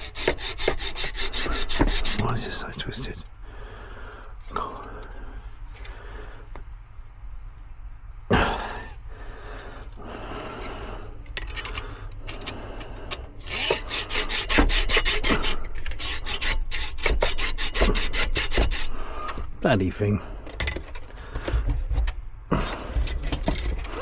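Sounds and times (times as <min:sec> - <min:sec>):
hand saw rasping on metal: 0:00.0 - 0:03.2, 0:12.3 - 0:19.5.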